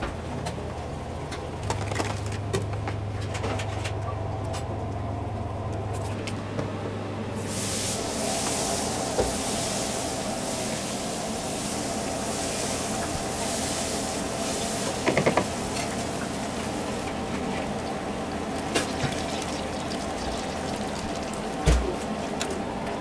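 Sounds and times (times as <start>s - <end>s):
onion rings sizzling in oil: 7.4s - 22.3s.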